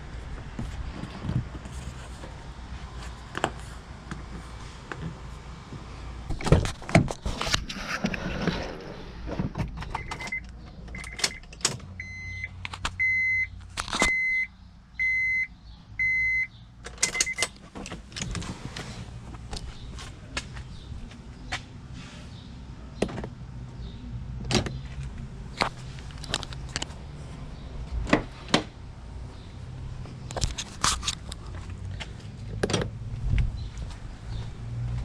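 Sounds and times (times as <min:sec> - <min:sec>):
handling clicks and knocks: 0:24.4 - 0:27.0.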